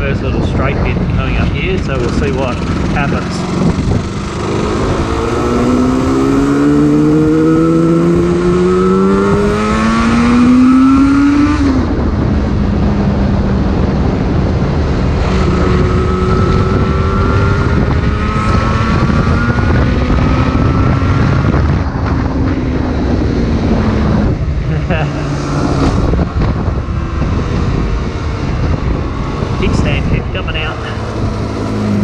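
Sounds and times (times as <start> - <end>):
wind rushing over microphone: 0.0 - 32.0
two-stroke engine pulling hard: 0.2 - 32.0.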